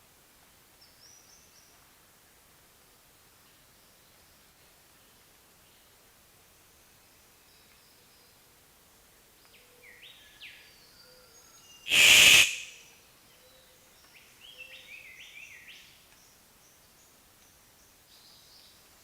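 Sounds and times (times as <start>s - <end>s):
loud harsh burst: 11.9s - 12.8s.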